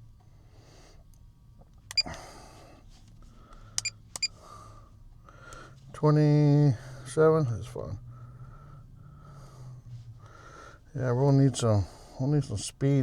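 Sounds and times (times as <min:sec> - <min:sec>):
soft breathing: 0:02.0 - 0:05.9, 0:08.0 - 0:10.9.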